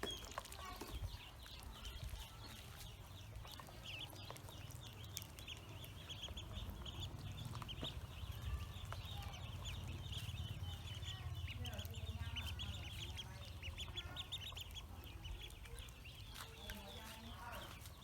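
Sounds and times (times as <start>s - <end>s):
ducklings peeping: 0.0s - 18.0s
low steady rumble: 3.5s - 16.3s.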